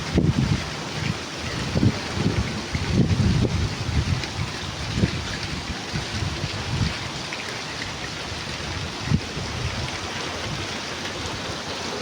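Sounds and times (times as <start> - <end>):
steady rain hiss: 0.0 - 12.0.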